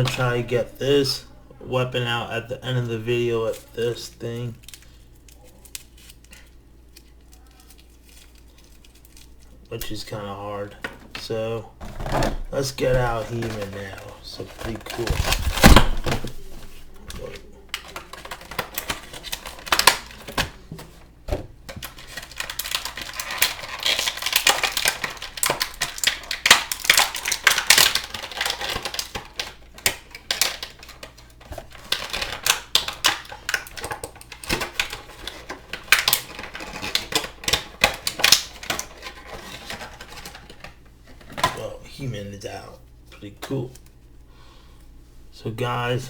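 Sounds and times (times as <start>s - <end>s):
packaging clicks and rustling: 4.6s - 9.7s, 10.8s - 41.7s.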